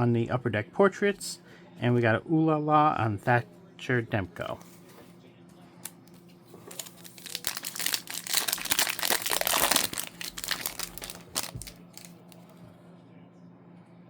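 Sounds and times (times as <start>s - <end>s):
wrapper being torn and crinkled: 6.6s - 12.4s.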